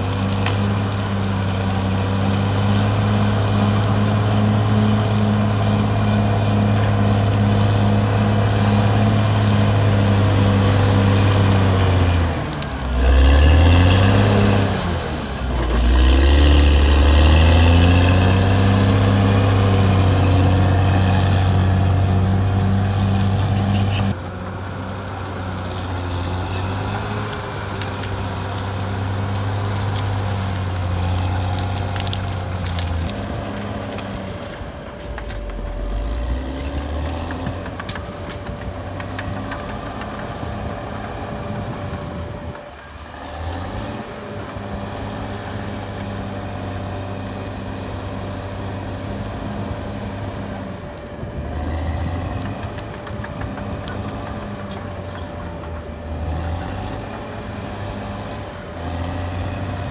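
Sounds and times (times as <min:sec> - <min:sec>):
bulldozer diesel engine running: 0:00.0 - 0:59.9
faint high-pitched squeals: 0:17.3 - 0:59.9.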